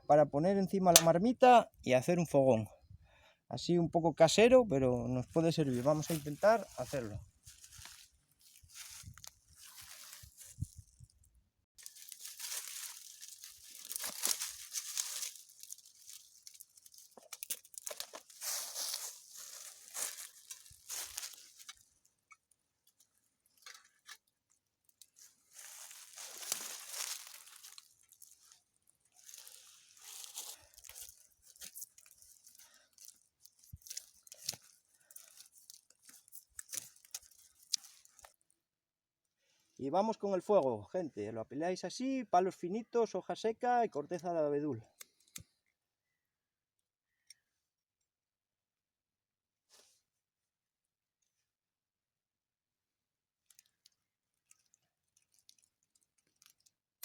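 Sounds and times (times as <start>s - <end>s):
twigs snapping: 0.9s - 1.1s, 7.5s - 11.1s, 11.8s - 38.4s, 44.9s - 45.6s, 53.4s - 57.0s
dry leaves and twigs crunching: 0.9s - 1.2s, 5.3s - 38.5s, 53.4s - 57.0s.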